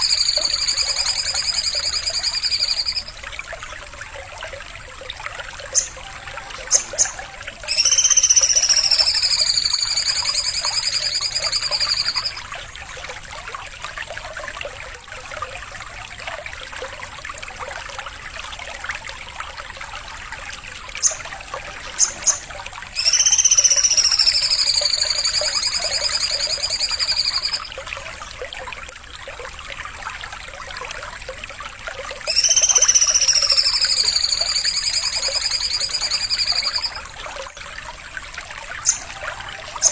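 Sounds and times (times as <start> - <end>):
bird chips and rapid trill: 0.0 - 3.2, 5.7 - 6.0, 6.6 - 12.4, 21.0 - 21.2, 22.0 - 27.7, 32.3 - 37.0
trickle of water: 0.0 - 39.9.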